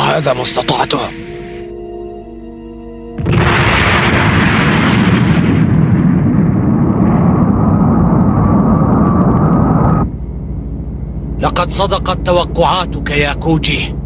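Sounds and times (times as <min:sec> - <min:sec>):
cartoon explosion with rumble: 0:03.2 - 0:10.0.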